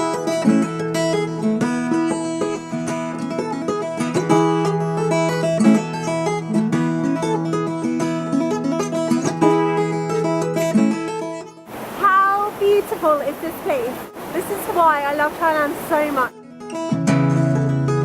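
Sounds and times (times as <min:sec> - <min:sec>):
picked acoustic guitar or banjo: 0:00.0 - 0:12.2, 0:14.3 - 0:18.0.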